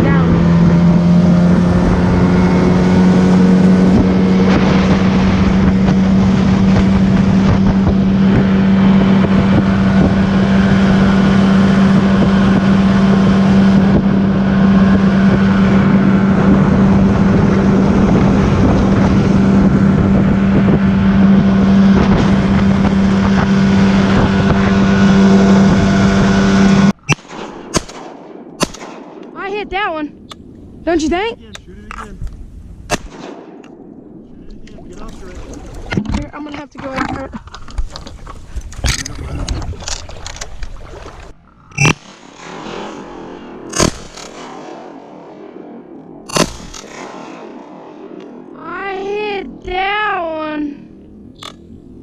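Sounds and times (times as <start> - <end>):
boat motor running: 0.0 - 27.1, 34.4 - 42.1
wind on microphone: 0.0 - 27.8, 29.3 - 52.0.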